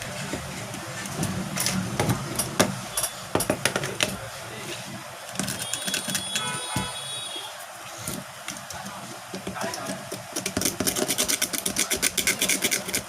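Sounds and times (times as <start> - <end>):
steady background noise: 0.0 - 13.0
small hand tools clicking: 9.7 - 13.0.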